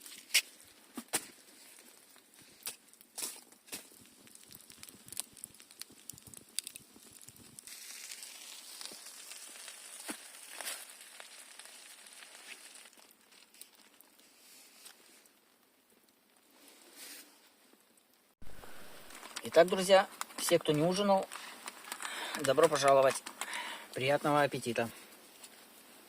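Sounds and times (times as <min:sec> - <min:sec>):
crinkling and rustling: 0:00.0 - 0:15.3, 0:18.7 - 0:23.6
campfire crackling: 0:00.0 - 0:26.0.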